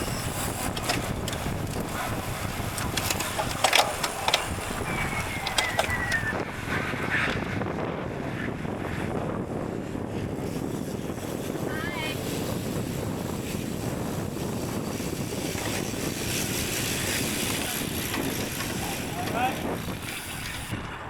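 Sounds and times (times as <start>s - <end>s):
wind rushing over microphone: 0.0s - 21.0s
sharp clicks: 0.4s - 6.4s
high falling squeal: 4.8s - 6.4s.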